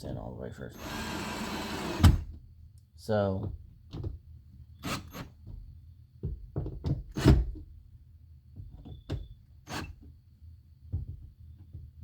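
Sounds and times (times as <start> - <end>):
knocks and clunks on car door: 5.4 - 7.7, 10.9 - 11.9.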